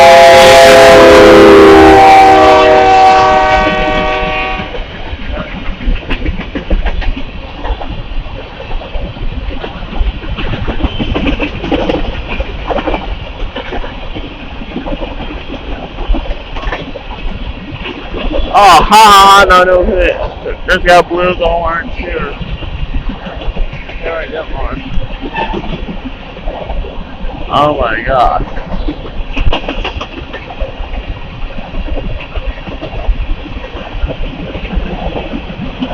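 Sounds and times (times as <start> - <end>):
locomotive air horn: 0.0 - 4.9
freight cars rumbling: 0.0 - 35.9
wheels and couplers knocking: 4.6 - 18.5, 28.3 - 35.9.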